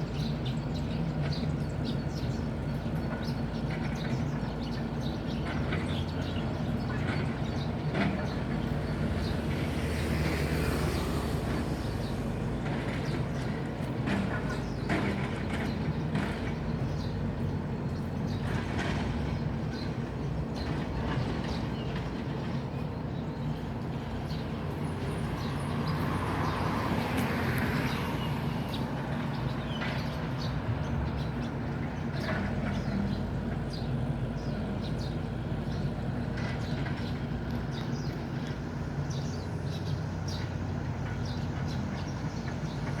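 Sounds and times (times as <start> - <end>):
engine humming: 0.5 - 43.0
vehicle passing: 8.4 - 14.2, 24.7 - 29.7.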